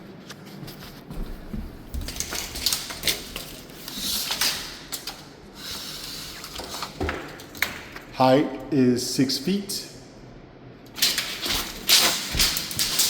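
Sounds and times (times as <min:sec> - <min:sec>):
tape measure scraping hiss: 0:05.6 - 0:06.9.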